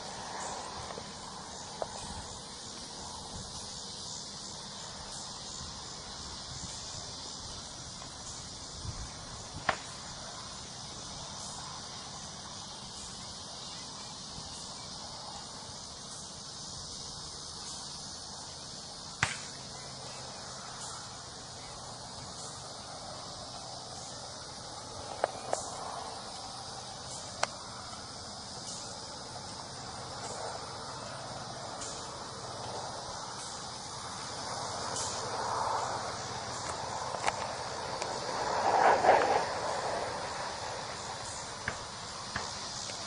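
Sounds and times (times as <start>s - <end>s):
insects buzzing: 0.0s - 43.0s
sharp cracks: 9.6s - 10.0s, 19.2s - 19.6s.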